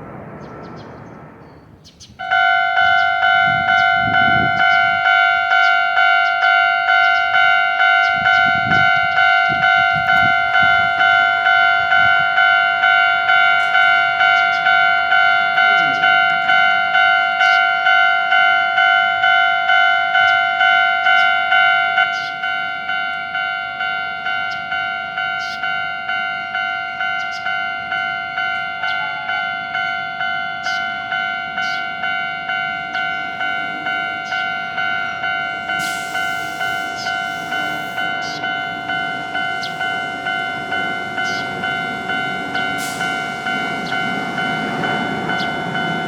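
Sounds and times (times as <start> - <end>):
rushing noise: 0.0 - 1.9
level crossing warning bell: 2.0 - 46.0.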